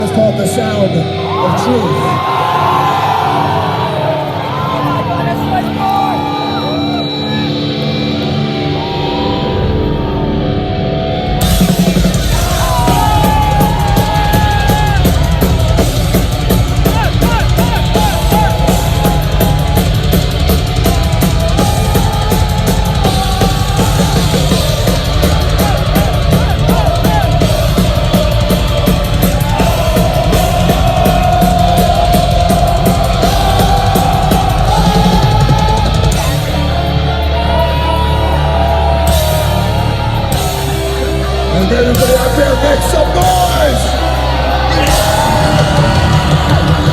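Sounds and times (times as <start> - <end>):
heavy metal band playing live: 0.0 - 46.9
fast dense drumming: 11.4 - 46.9.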